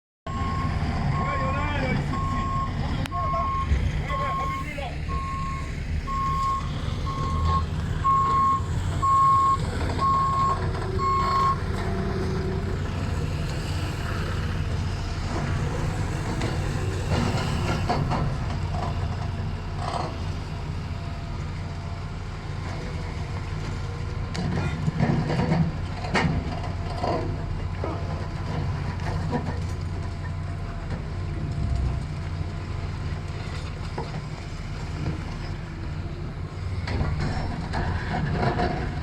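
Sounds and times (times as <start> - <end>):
reversing alarm beeping: 0.3 - 11.7
diesel engine rumble: 0.3 - 39.0.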